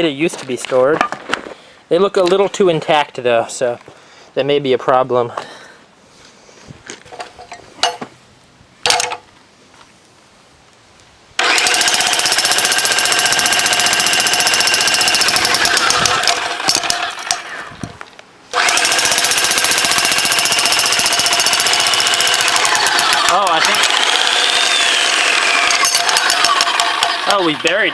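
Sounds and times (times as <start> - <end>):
jackhammer hammering: 11.4 - 17.7, 18.5 - 27.9.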